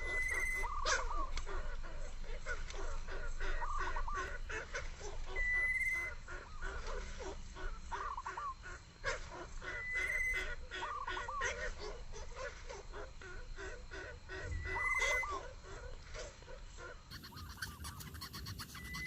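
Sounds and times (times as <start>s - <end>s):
birds chirping: 0.0s - 12.1s, 12.9s - 19.0s
falling bird calls: 0.0s - 19.0s.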